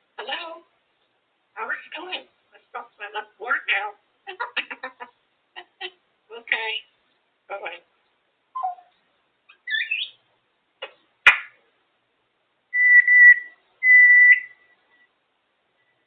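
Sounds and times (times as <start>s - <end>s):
parrot chirping: 2.9s - 6.8s, 8.6s - 10.2s, 12.7s - 15.0s
parrot whistling: 8.6s - 8.9s, 9.6s - 10.2s, 12.8s - 14.8s.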